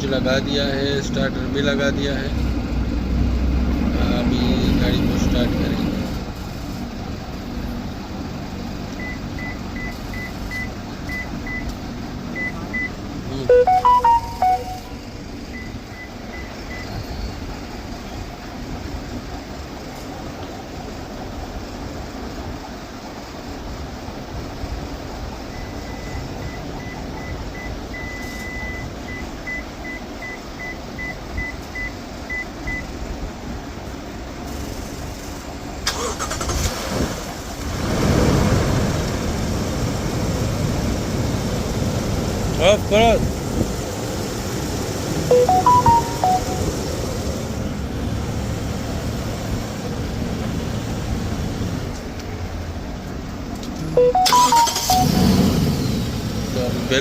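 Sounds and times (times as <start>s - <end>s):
electronic chime: 13.5s - 15.0s, 45.3s - 46.9s, 54.0s - 55.4s
short high-pitched electronic beeps: 13.5s - 15.0s, 45.3s - 46.8s, 53.9s - 55.4s.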